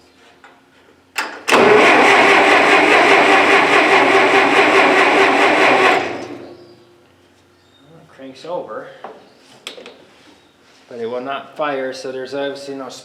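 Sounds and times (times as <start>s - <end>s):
starter motor cranking engine: 1.5s - 6.7s.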